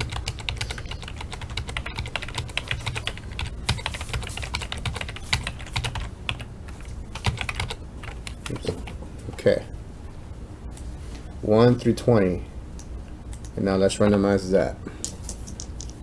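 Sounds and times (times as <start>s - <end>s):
rapid keyboard typing: 0.0s - 9.5s
low hum: 0.0s - 16.0s.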